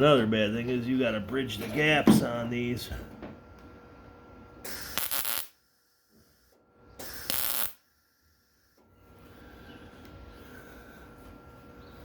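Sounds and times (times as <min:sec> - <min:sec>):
crackling tack welds: 0:04.6 - 0:08.8.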